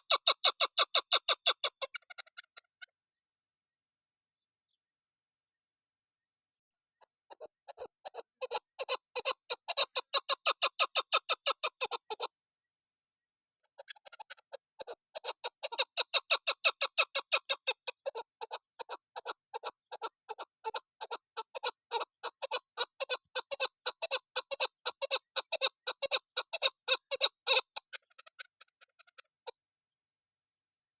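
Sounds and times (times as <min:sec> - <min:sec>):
partridge clucking calls: 0:00.0 - 0:02.9, 0:06.9 - 0:12.3, 0:13.6 - 0:29.6.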